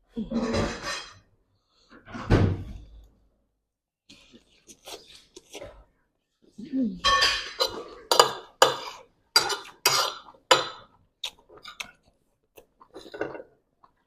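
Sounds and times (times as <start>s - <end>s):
utensils clinking against dish: 7.0s - 10.8s.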